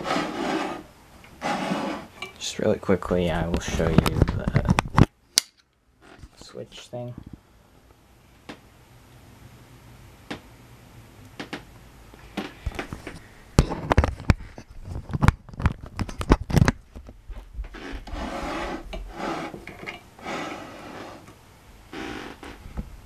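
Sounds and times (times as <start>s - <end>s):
rough rubbing: 0.0s - 2.2s, 17.6s - 22.6s.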